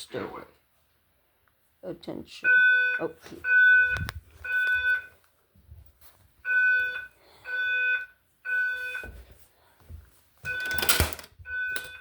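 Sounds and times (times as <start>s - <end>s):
fire alarm beeps: 2.4s - 5.2s, 6.4s - 9.2s, 10.5s - 12.0s.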